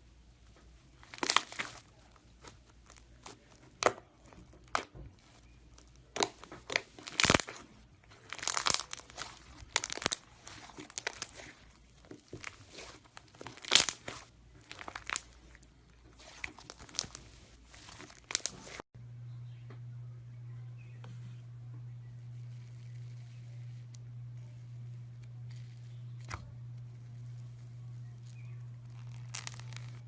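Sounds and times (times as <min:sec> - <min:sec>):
steady low hum: 0:00.0 - 0:30.0
slime crust crunching and crackling: 0:00.8 - 0:18.8, 0:26.7 - 0:30.0.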